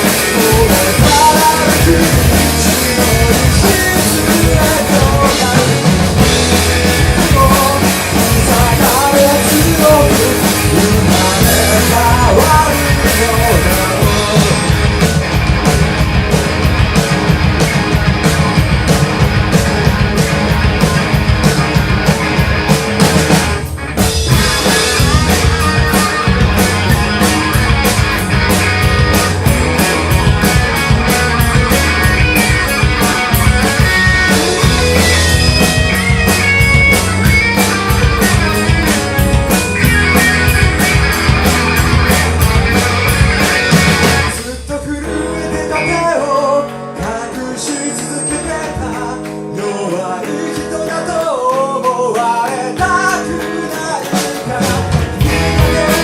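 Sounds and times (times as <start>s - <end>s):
person singing: 0.0s - 14.8s, 44.3s - 56.0s
bass guitar: 0.0s - 56.0s
drum kit: 0.0s - 56.0s
electric guitar: 0.0s - 56.0s.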